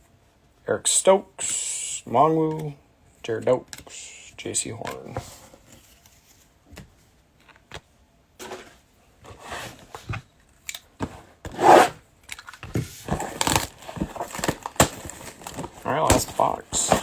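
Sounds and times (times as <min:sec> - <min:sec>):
trading cards handled: 0:09.3 - 0:17.0.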